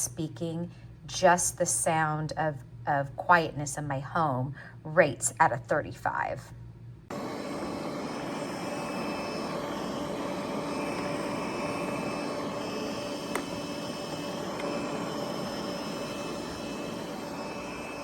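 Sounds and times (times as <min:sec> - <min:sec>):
steady mechanical drone: 0:04.8 - 0:18.0.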